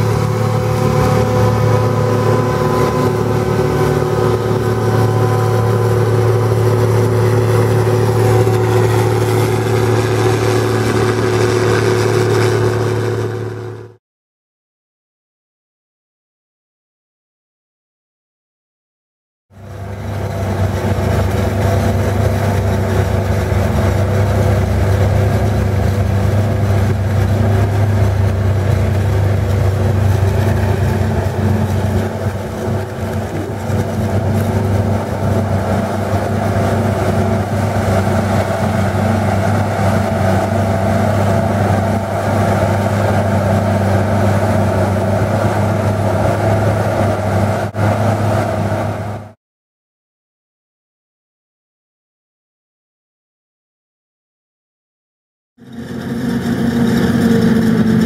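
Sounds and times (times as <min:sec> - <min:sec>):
deep diesel engine drone: 0:00.0 - 0:14.0, 0:19.5 - 0:49.4, 0:55.6 - 0:58.0
higher machine hum: 0:00.0 - 0:14.0, 0:19.6 - 0:49.4, 0:55.6 - 0:58.0.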